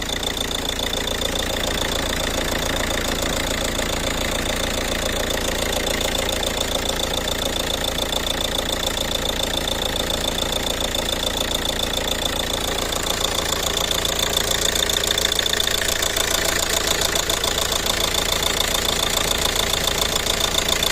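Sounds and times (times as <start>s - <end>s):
car engine running: 0.0s - 20.9s
rapid engine ticking: 0.0s - 20.9s.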